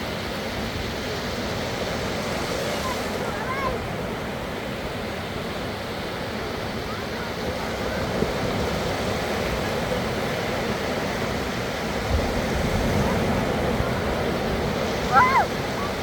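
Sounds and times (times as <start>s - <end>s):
sea surf washing onto beach: 0.0s - 16.0s.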